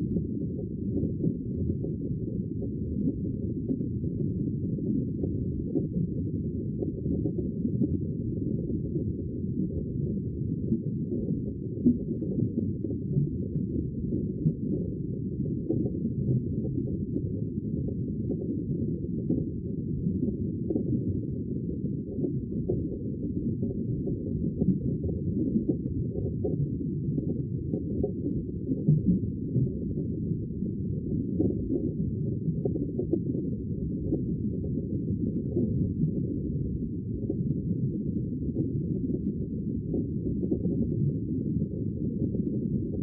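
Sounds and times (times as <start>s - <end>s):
sea water low rumble: 0.0s - 43.0s
faint small crackles: 15.7s - 43.0s.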